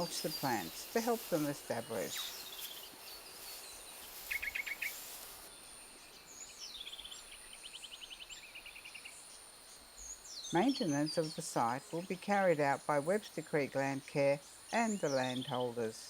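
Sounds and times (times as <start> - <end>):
birds calling: 0.0 - 5.5.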